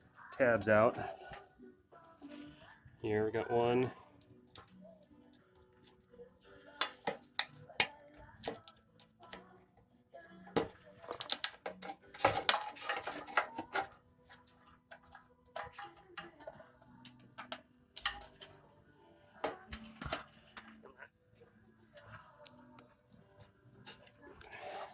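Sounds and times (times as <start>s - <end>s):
plastic clips snapping and rattling: 6.8s - 9.4s, 10.6s - 18.6s, 19.4s - 20.8s.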